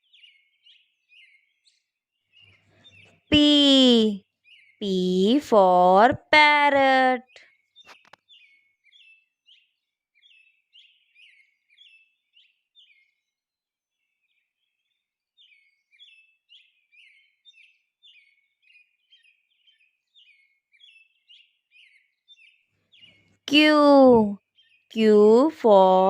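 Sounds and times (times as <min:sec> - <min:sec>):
bird chirping: 0:00.0 - 0:26.0.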